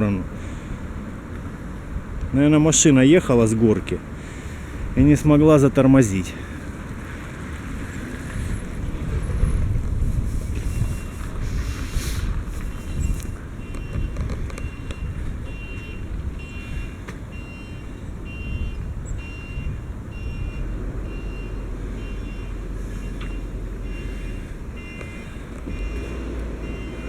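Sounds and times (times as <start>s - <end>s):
wind buffeting microphone: 4.0s - 26.6s.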